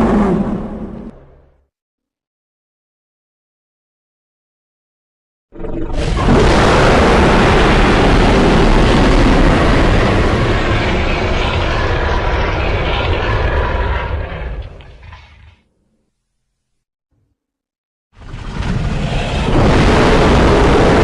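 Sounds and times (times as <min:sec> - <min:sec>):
monster roar: 0:00.0 - 0:01.1, 0:06.0 - 0:14.8.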